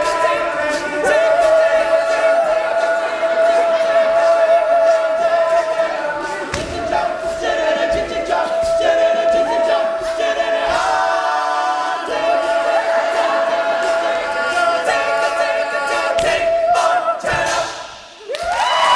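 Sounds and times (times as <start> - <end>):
male a cappella group singing: 0.0 - 18.1.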